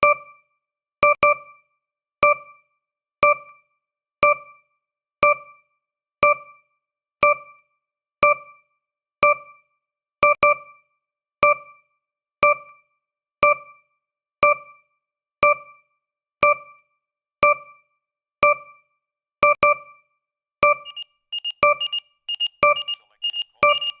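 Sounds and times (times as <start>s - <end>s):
fast alarm beeps: 20.9s - 24.0s
short timer beeps: 20.9s - 24.0s.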